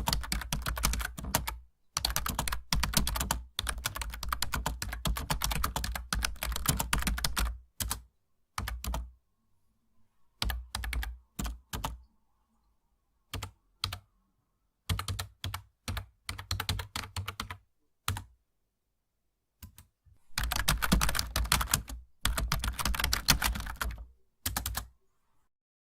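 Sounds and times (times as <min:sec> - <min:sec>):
laptop keyboard typing: 0:00.0 - 0:09.1, 0:10.4 - 0:12.1, 0:13.3 - 0:14.1, 0:14.8 - 0:18.4, 0:19.6 - 0:24.9.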